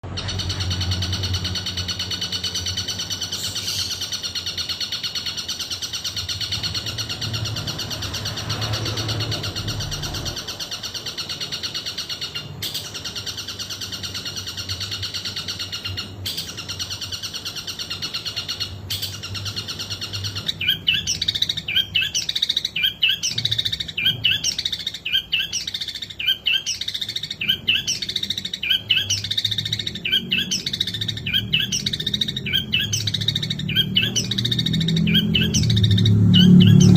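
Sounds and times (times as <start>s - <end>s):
shrike singing: 0.0s - 36.9s.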